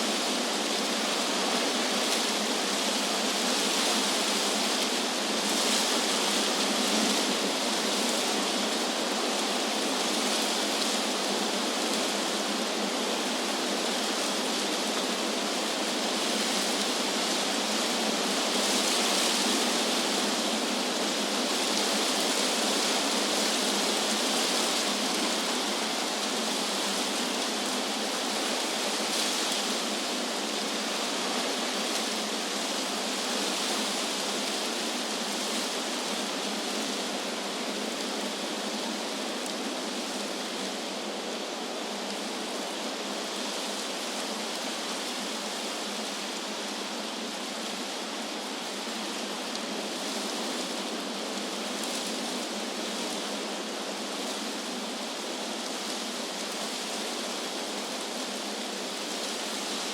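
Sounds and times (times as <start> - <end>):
wind rustling leaves: 0.0 - 59.9.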